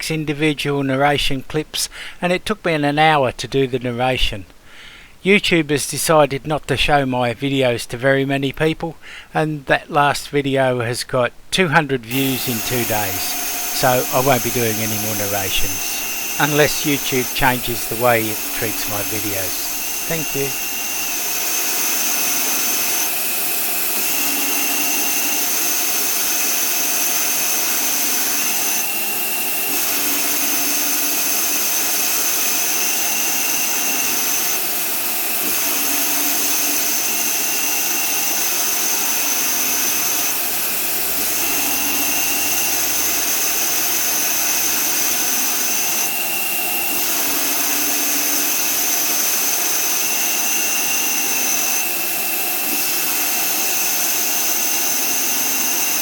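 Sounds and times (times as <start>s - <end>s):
high machine whine: 12.1s - 56.0s
lathe cutting metal: 12.1s - 56.0s.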